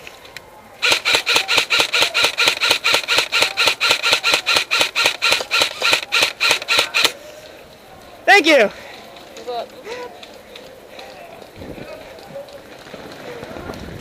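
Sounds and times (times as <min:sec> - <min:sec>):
magazine thumb wheel ratcheting: 0:00.8 - 0:07.2.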